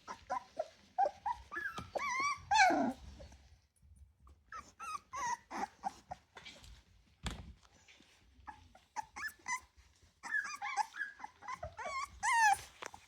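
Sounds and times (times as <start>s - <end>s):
puppies whimpering and squealing: 0.0s - 3.3s, 4.5s - 6.4s, 8.4s - 13.0s.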